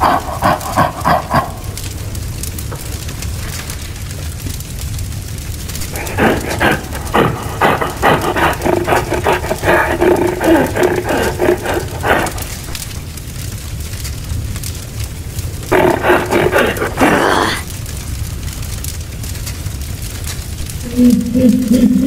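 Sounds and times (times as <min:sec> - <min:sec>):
creature growls and roars: 0:00.0 - 0:02.1, 0:05.7 - 0:13.4, 0:15.3 - 0:18.0.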